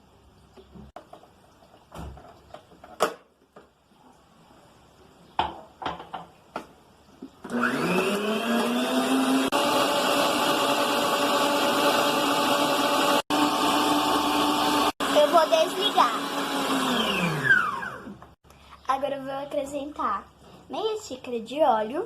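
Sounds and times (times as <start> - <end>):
electric blender motor running: 7.4 - 18.4.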